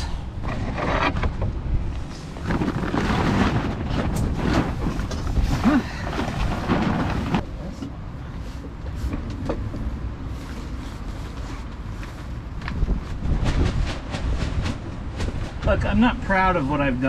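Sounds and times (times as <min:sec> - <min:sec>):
wind rumbling on microphone: 0:00.0 - 0:17.0
plastic tarp rustling: 0:02.3 - 0:07.4.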